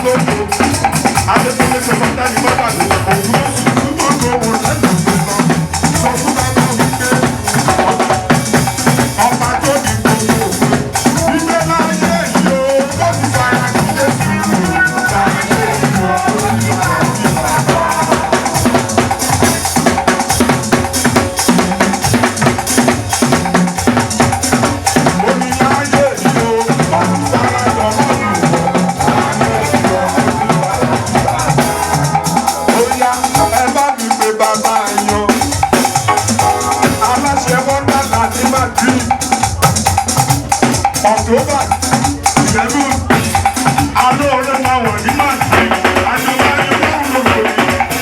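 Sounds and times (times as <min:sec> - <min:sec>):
drums: 0:00.0 - 0:48.0
bending pitched melodic lines: 0:09.2 - 0:34.0, 0:36.0 - 0:38.2.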